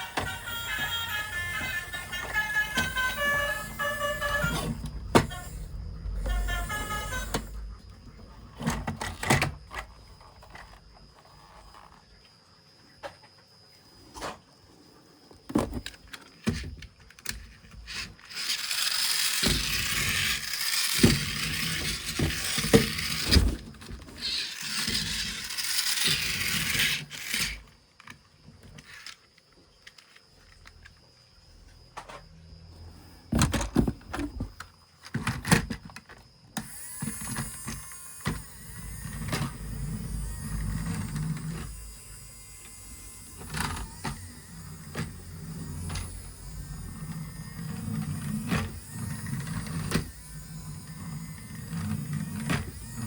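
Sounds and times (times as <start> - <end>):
low whirring rumble: 0.0 - 10.8, 37.4 - 53.0.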